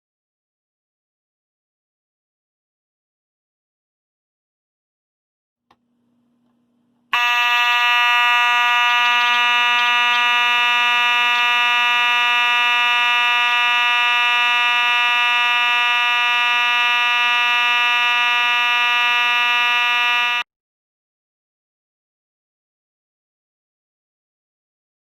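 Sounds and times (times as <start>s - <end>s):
fire alarm horn buzzing: 7.1s - 20.5s.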